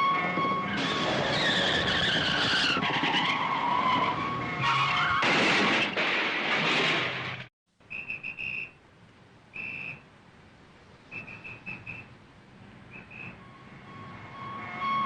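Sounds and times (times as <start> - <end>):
car tyres skidding: 0.7 - 5.6
whistle blasts: 7.9 - 8.8, 9.6 - 10.0, 11.1 - 12.1, 12.9 - 15.0.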